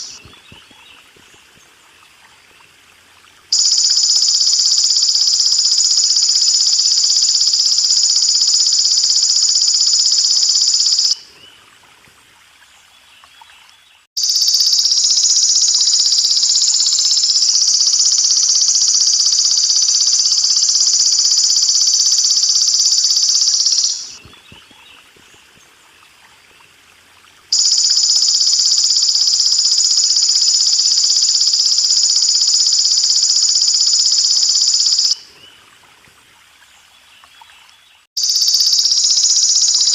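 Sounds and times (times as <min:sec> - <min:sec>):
water trickling: 0:00.1 - 0:04.0, 0:11.2 - 0:14.1, 0:24.2 - 0:27.8, 0:35.2 - 0:38.1.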